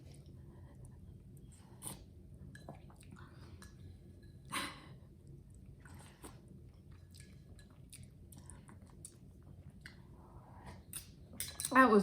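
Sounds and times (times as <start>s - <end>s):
chewing cereal: 5.5s - 11.6s.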